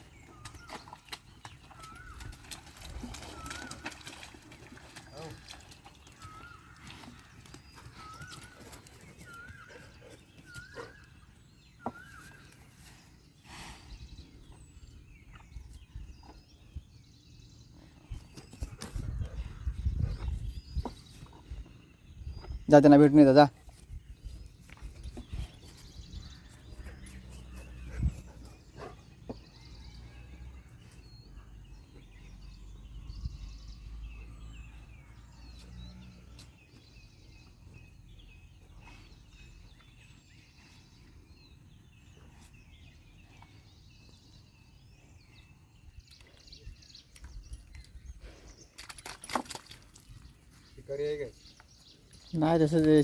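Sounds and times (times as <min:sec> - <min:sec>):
small birds chirping: 0:00.0 - 0:53.0
wind rumble on microphone: 0:18.2 - 0:22.7, 0:32.6 - 0:33.8.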